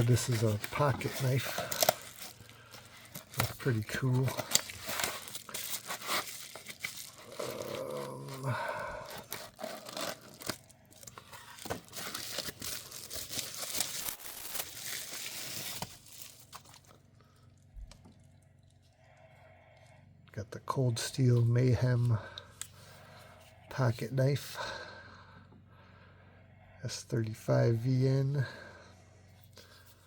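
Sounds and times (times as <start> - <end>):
packaging being torn and crinkled: 0.0 - 17.0.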